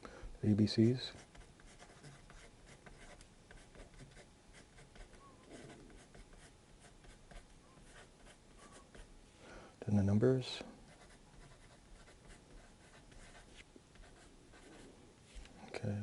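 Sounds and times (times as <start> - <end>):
pencil scratching on paper: 1.1 - 9.1, 10.9 - 14.8.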